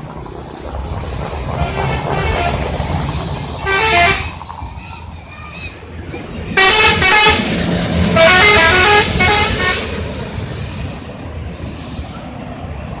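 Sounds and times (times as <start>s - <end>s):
vehicle rumble: 0.0s - 13.0s
musical bus horn: 1.6s - 2.7s, 3.6s - 4.3s, 6.6s - 7.5s, 8.2s - 10.0s.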